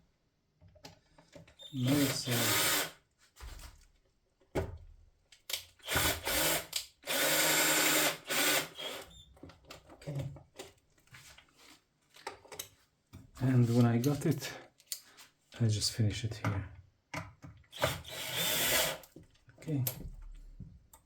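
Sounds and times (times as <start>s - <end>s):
power screwdriver driving screws: 1.8s - 2.9s, 5.8s - 9.1s, 17.7s - 19.0s.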